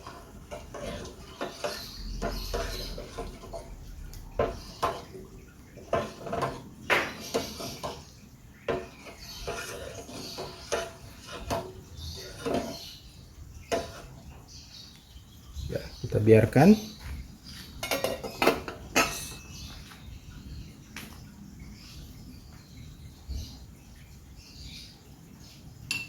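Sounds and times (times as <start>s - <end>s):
utensil clinking on cooking pot: 0.0s - 13.0s, 13.7s - 14.2s, 17.8s - 19.6s.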